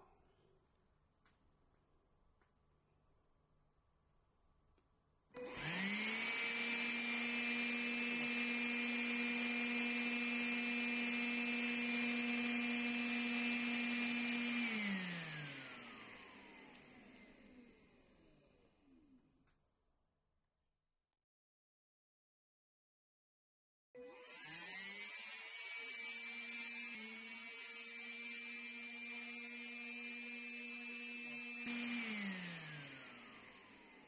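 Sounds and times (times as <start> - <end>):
stick vacuum motor whining: 5.3 - 19.2, 24.0 - 34.0.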